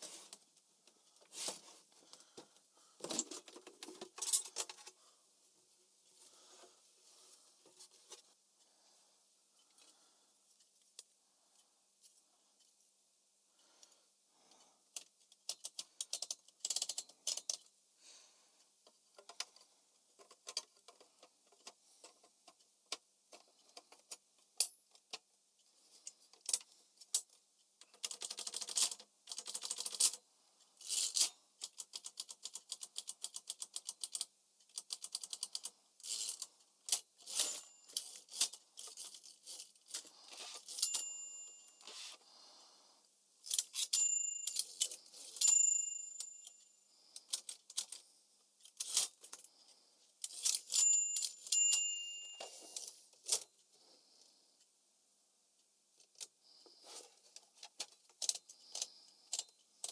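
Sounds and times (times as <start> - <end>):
typewriter keys clacking: 27.9 - 30.2
typewriter bell ringing: 40.7 - 42.1, 43.7 - 46.7, 50.6 - 52.8.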